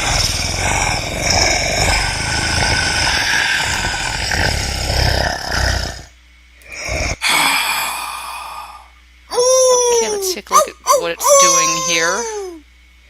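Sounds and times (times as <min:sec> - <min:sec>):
monster voice sound effect: 0:00.0 - 0:05.5.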